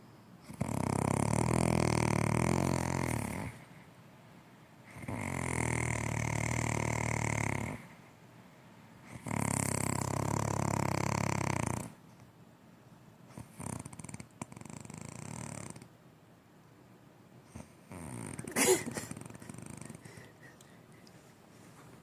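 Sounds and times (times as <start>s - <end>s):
person snoring: 0.5s - 3.6s, 4.9s - 7.9s, 9.1s - 12.0s, 17.6s - 20.4s.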